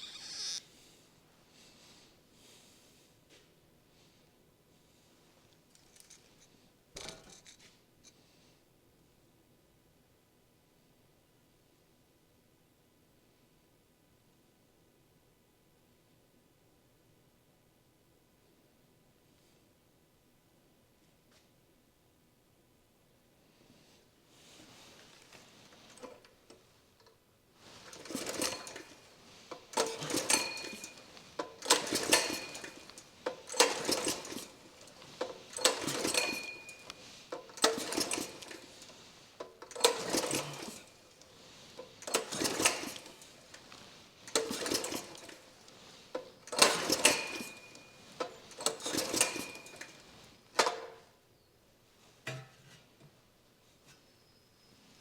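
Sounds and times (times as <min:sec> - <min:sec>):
short high squeak: 0:00.0 - 0:00.7
engine pull-starter cranking: 0:27.6 - 0:51.0.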